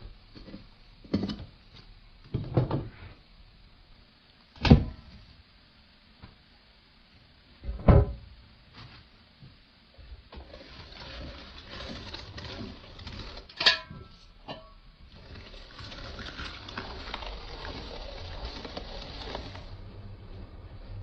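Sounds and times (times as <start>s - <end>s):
kitchenware clinking: 13.5s - 14.8s.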